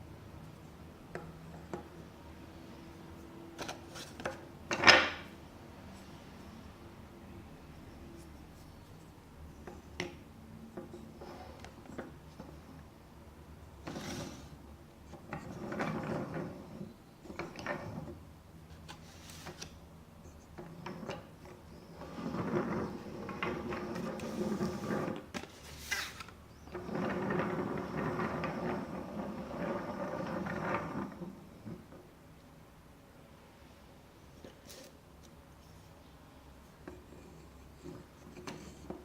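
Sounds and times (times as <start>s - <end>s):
wooden toy train rattling: 20.6s - 25.9s, 26.7s - 32.0s.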